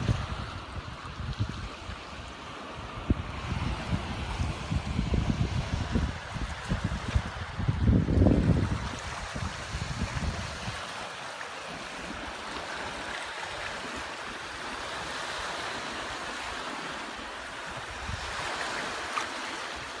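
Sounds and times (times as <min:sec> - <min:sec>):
wind buffeting microphone: 0:00.0 - 0:11.1, 0:17.6 - 0:19.9
sea waves washing on shore: 0:00.0 - 0:20.0.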